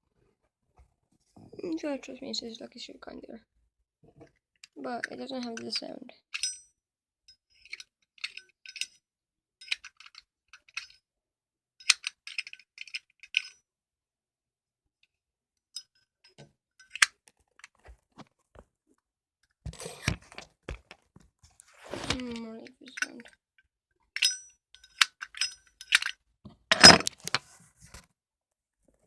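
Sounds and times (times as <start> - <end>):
metal clatter: 26.7 - 27.1.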